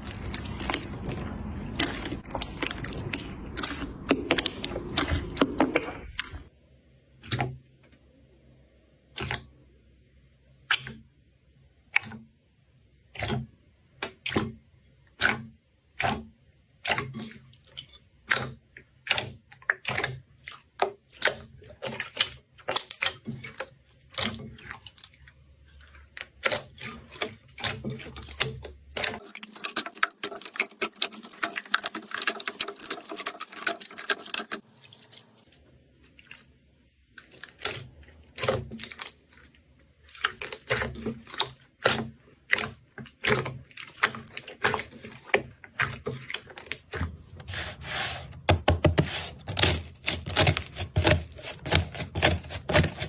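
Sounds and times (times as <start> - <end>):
slime squelching and popping: 0.0 - 6.5, 15.2 - 47.2.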